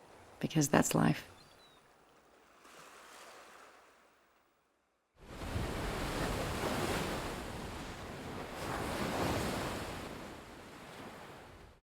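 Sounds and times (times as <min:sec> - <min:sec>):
sea waves washing ashore: 0:01.9 - 0:04.4, 0:05.2 - 0:11.8.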